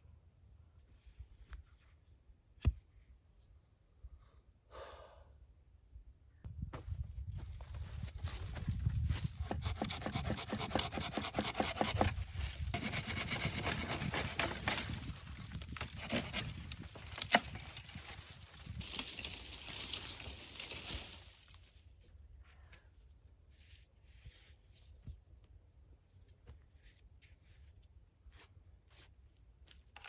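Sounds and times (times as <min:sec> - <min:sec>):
wood rubbing and scraping: 0:09.4 - 0:21.3
small crackles: 0:16.6 - 0:21.8.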